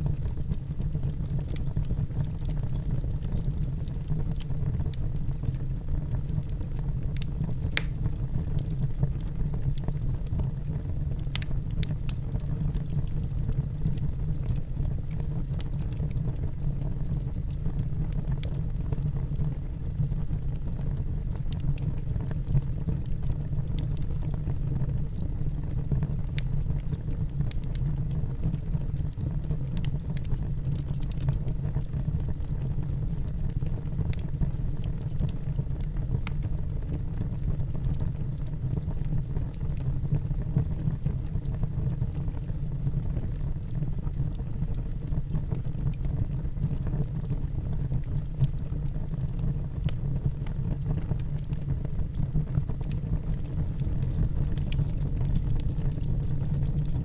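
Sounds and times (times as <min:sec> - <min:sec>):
campfire burning rumble: 0:00.0 - 0:57.0
crackling pops of fire: 0:07.2 - 0:08.7, 0:11.2 - 0:13.6, 0:34.8 - 0:36.6, 0:44.9 - 0:57.0.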